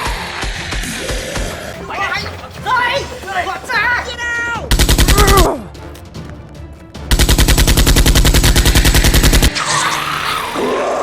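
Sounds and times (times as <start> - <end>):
machine-gun fire: 4.7 - 5.5, 7.1 - 9.5.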